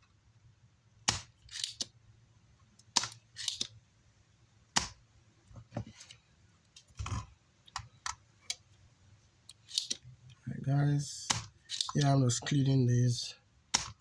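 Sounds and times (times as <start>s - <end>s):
hand tools clicking and scraping: 1.4s - 1.9s, 3.0s - 3.7s, 9.5s - 10.0s, 11.2s - 12.3s.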